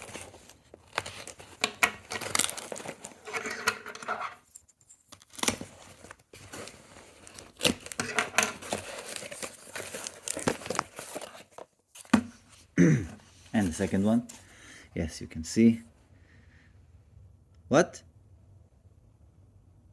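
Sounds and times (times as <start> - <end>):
knife cutting package: 0.0 - 11.6
packaging tearing and crinkling: 0.0 - 11.7.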